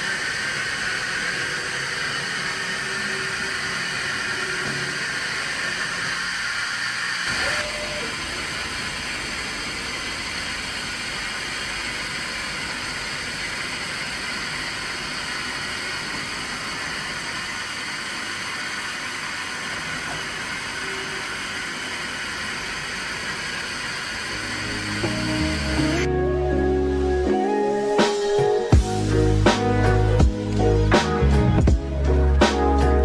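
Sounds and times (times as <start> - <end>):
grinding machine hiss: 0.0 - 26.1.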